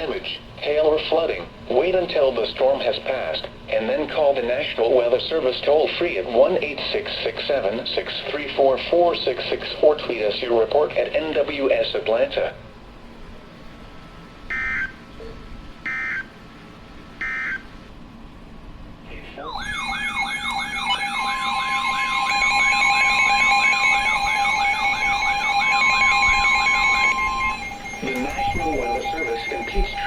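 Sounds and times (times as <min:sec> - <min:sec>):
wailing siren alert tone: 0:14.5 - 0:15.0, 0:15.9 - 0:16.3, 0:17.2 - 0:17.6, 0:19.4 - 0:30.0
screechy digital data tones: 0:19.4 - 0:30.0
steady alert tones: 0:19.4 - 0:30.0.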